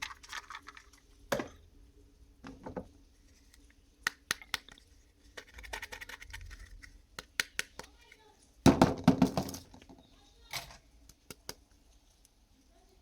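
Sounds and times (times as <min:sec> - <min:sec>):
plastic toys clicking and tapping: 0:05.4 - 0:08.2.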